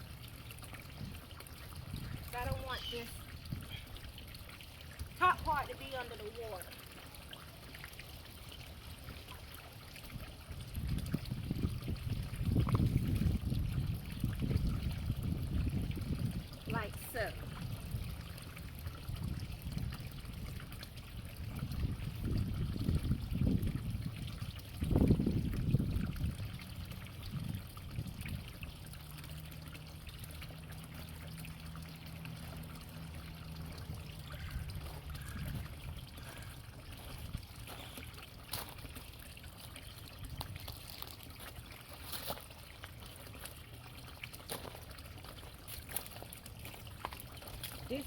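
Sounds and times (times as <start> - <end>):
water trickling and sloshing: 0.0 - 48.0.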